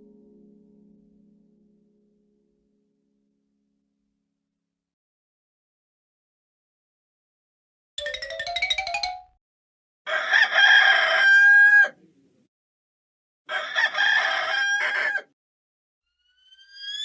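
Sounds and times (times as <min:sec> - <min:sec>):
rooster crowing: 0:10.1 - 0:12.0, 0:13.5 - 0:15.4.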